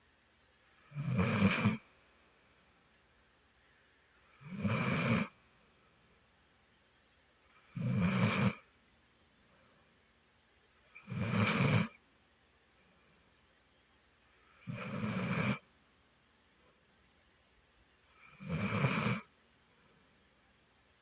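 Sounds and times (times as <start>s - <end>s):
loud snoring: 0.9s - 1.8s, 4.4s - 5.4s, 7.6s - 8.6s, 11.0s - 12.0s, 14.5s - 15.7s, 18.2s - 19.3s.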